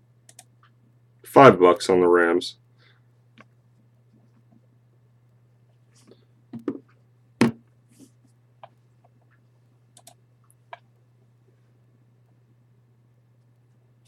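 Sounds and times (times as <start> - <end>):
low electrical hum: 0.0 - 14.0
clicks and knocks at a desk: 6.6 - 7.6.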